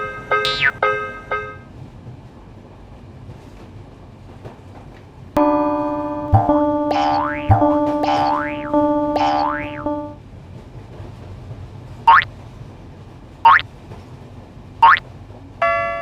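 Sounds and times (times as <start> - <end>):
boing-like slide: 0.5 - 0.8, 6.4 - 9.8, 12.1 - 12.3
sustained keyboard chord: 5.4 - 10.2
sliding pitched keyboard notes: 6.3 - 10.2.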